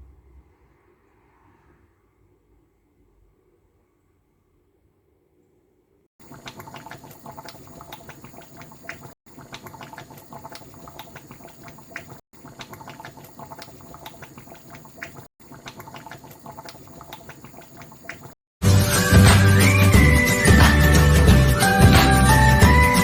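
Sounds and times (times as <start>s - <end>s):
pot bubbling on the boil: 6.2s - 18.4s.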